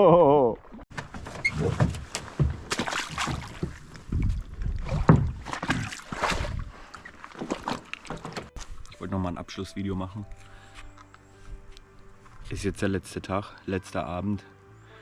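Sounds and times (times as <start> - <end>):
water splashing against canoe: 0.6 - 8.9
paddle strokes: 0.9 - 9.0.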